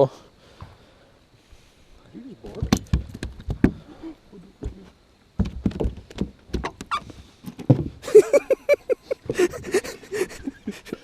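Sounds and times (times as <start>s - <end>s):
knocks against a boat: 5.4s - 8.0s.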